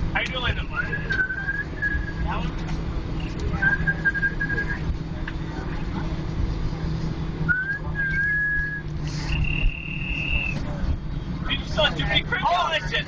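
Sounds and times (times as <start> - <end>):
airliner cabin drone: 0.0 - 12.9
person whistling held notes: 1.1 - 2.2, 3.6 - 4.8, 7.5 - 10.6.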